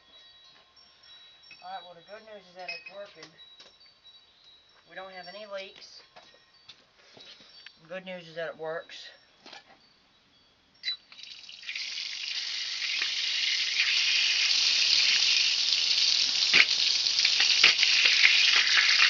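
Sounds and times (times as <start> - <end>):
water hissing from hose bib: 11.2 - 19.0.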